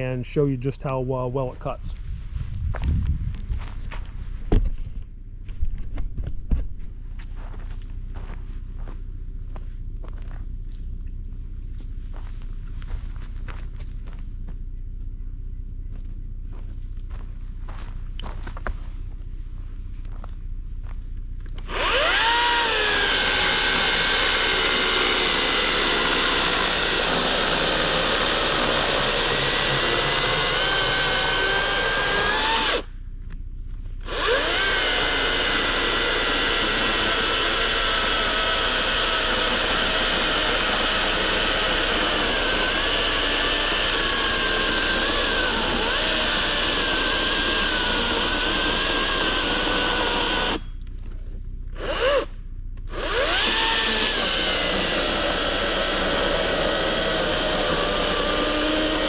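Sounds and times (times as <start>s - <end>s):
electric chainsaw cutting log: 21.6s - 32.9s, 34.0s - 50.7s, 51.7s - 52.3s, 52.9s - 59.0s.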